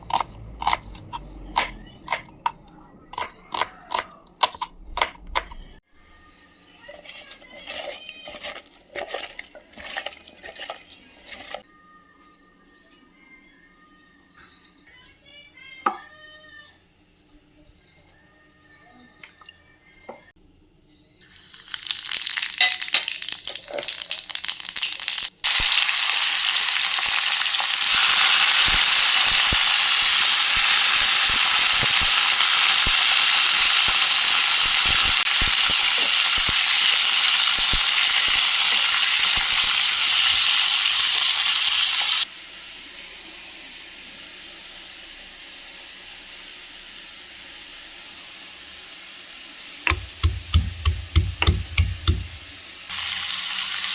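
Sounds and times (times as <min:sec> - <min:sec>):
vegetables sizzling in hot oil: 0:21.2 - 0:53.9.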